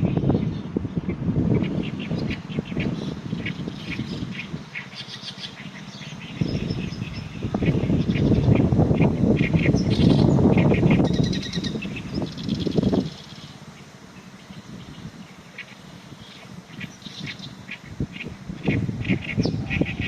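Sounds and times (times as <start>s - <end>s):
bird singing rapid notes: 0.0s - 20.0s
wind buffeting microphone: 0.0s - 20.0s.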